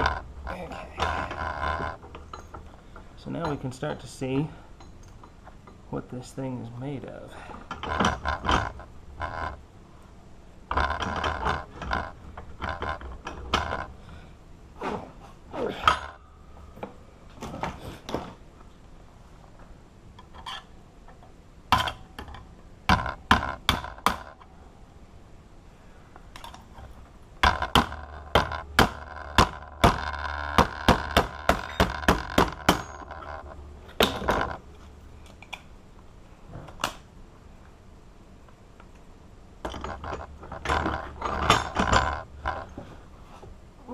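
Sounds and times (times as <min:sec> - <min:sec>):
metal knocks and clinks: 0:01.0 - 0:03.8, 0:04.5 - 0:05.8, 0:26.4 - 0:34.6, 0:39.6 - 0:42.9.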